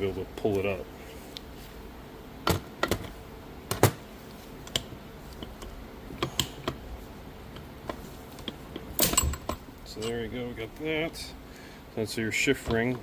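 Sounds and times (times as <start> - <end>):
metal parts clicking and tapping: 7.6 - 10.2.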